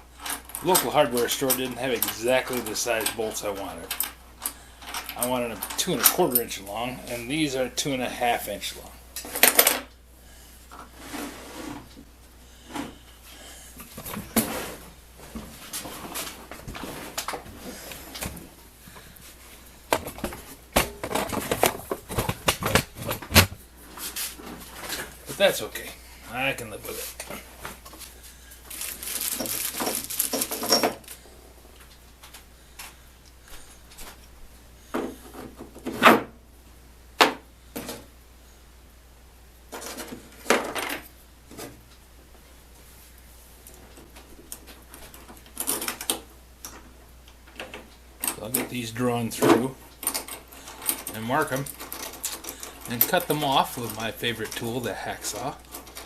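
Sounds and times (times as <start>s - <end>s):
tools knocking and scraping: 19.9s - 25.1s, 29.4s - 31.0s.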